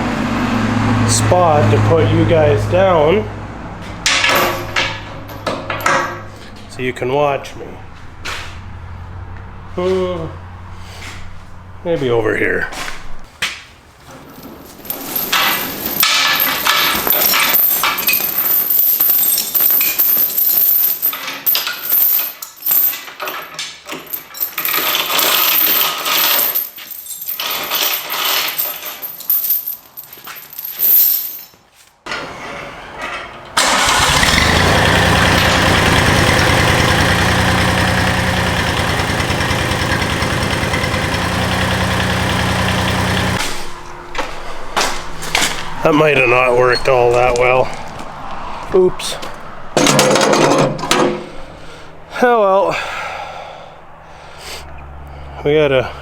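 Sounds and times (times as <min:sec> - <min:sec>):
clanking and knocking: 0:03.8 - 0:06.6, 0:14.1 - 0:26.6, 0:32.1 - 0:45.5, 0:49.8 - 0:51.3
lawn tractor engine running: 0:33.6 - 0:43.4.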